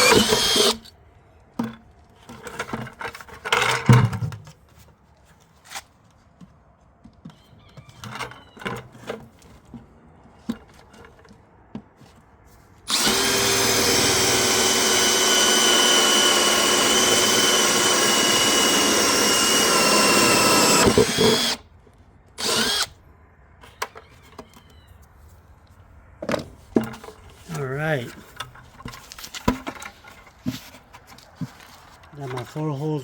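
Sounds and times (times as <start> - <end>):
power drill whining: 0.0 - 0.9, 12.9 - 21.6, 22.4 - 23.0.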